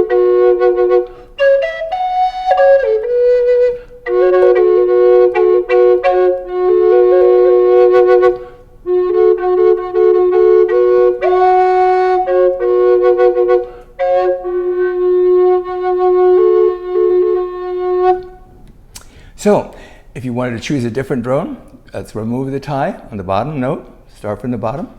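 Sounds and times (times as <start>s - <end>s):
double flute melody over drone: 0.0s - 18.5s.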